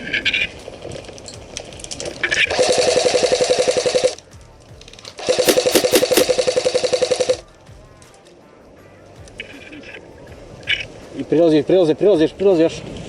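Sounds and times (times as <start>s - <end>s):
background music: 0.0s - 13.0s
airsoft gun firing full-auto: 2.5s - 4.2s, 5.2s - 7.4s.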